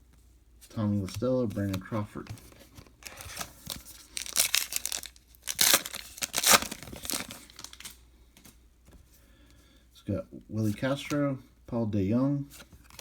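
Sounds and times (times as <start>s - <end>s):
wrapper tearing and crinkling: 3.0s - 8.0s.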